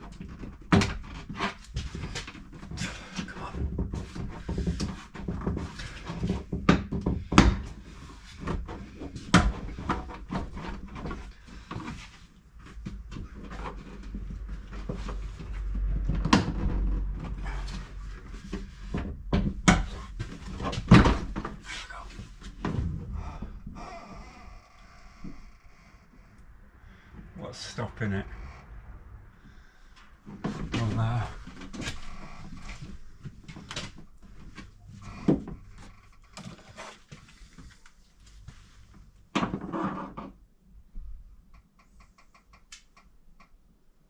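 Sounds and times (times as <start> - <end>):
low rumble: 14.1 - 36.2
plastic clicking and creaking: 35.0 - 36.9, 41.5 - 43.6.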